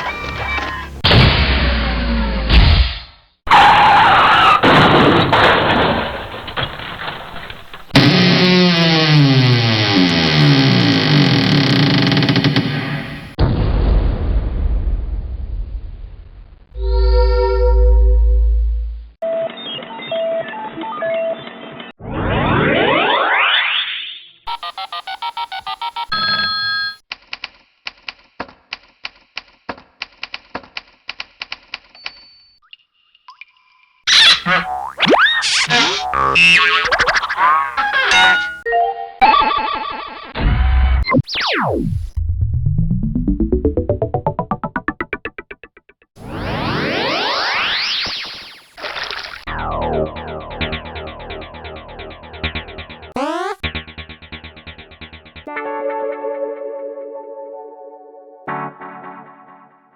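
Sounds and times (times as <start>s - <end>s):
noisy comedy screech: 3.5s - 4.7s, 34.1s - 38.6s, 53.2s - 53.6s.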